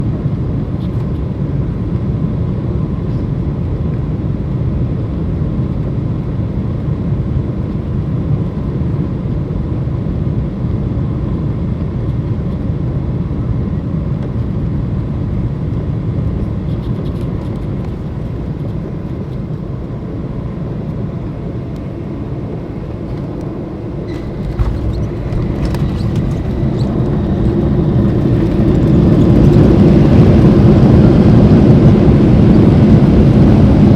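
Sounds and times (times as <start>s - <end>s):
jet engine cabin drone: 0.0s - 33.9s
reverse thrust roar: 21.6s - 33.9s
wheels touching down thump: 24.1s - 29.6s.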